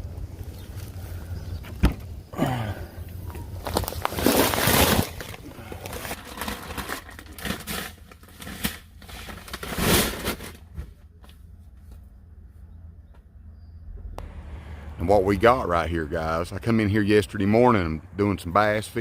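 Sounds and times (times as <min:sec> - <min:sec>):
rustling handling noises: 0:03.1 - 0:12.7.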